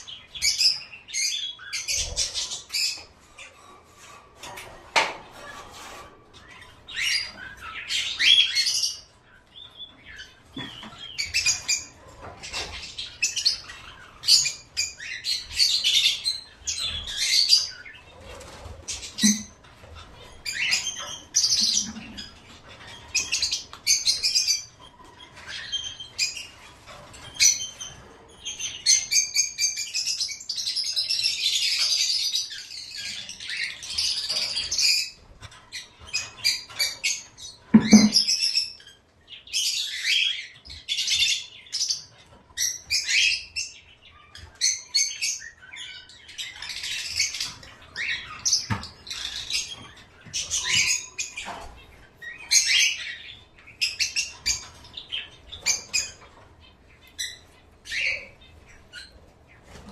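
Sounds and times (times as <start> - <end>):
pet birds chirping and chattering: 0.0 - 59.9.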